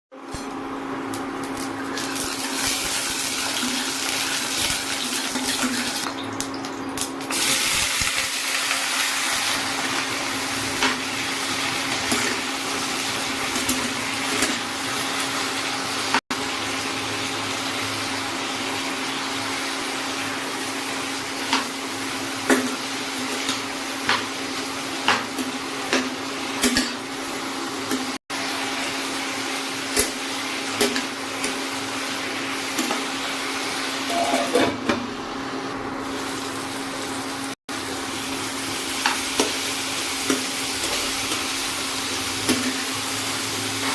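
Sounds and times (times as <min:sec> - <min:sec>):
pots and utensils clinking: 0:34.1 - 0:35.0.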